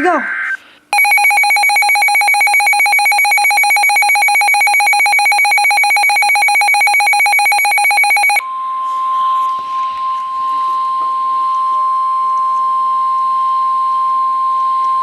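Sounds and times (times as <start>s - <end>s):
pulsing electronic alarm beep: 0.3s - 8.4s
steady warning tone: 1.0s - 8.4s.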